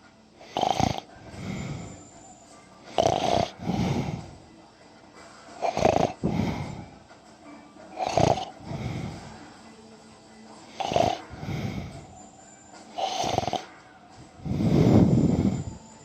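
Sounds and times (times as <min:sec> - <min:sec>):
person snoring: 0:00.4 - 0:02.0, 0:02.9 - 0:04.4, 0:05.6 - 0:07.0, 0:08.0 - 0:09.4, 0:10.7 - 0:12.1, 0:13.0 - 0:13.8, 0:14.4 - 0:15.8
soft breathing: 0:00.4 - 0:07.2, 0:08.0 - 0:16.0.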